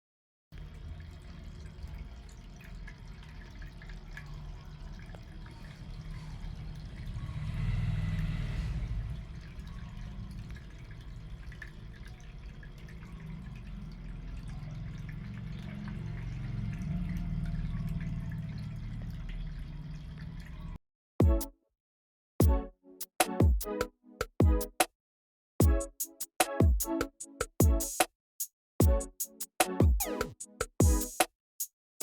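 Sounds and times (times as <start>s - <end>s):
water trickling and dripping: 0.6s - 20.8s.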